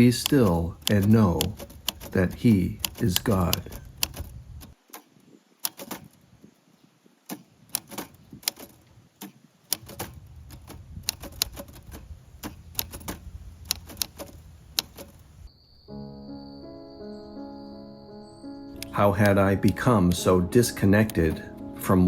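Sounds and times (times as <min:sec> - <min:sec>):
wood fire crackling and popping: 0:09.7 - 0:15.5
low steady rumble: 0:09.9 - 0:15.5
soft music: 0:15.8 - 0:22.0.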